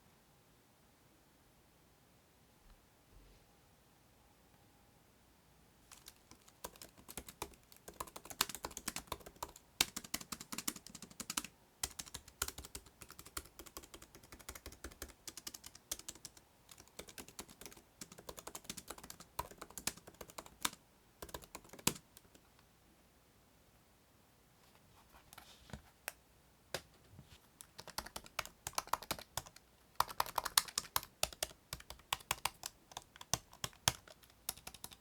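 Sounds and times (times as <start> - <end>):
laptop keyboard typing: 5.9 - 22.4, 27.6 - 35.0.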